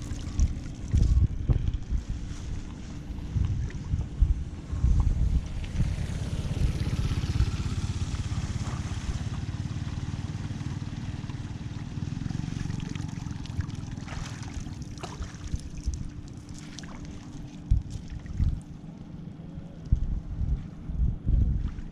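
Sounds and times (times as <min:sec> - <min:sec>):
water trickling and gurgling: 0:00.0 - 0:01.4, 0:06.6 - 0:18.8
wind rumble on microphone: 0:00.0 - 0:21.9.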